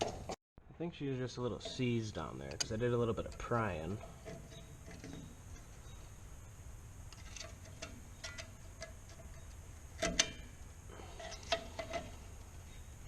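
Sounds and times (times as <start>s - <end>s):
hand tools tapping metal parts: 7.1s - 10.6s.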